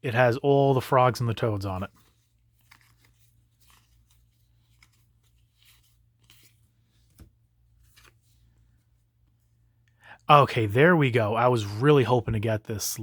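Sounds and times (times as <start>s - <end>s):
trading cards rustling: 0.7s - 9.4s.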